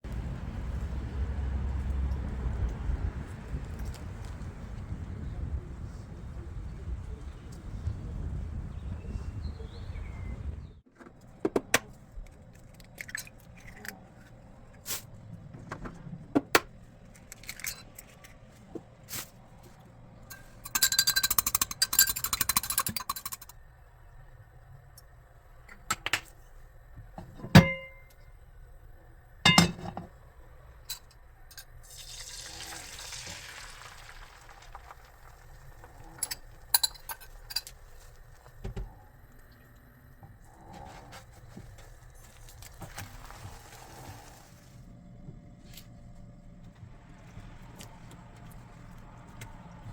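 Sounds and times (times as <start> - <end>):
dishes and utensils clinking: 20.3 - 23.6, 27.2 - 28.2, 29.5 - 30.1.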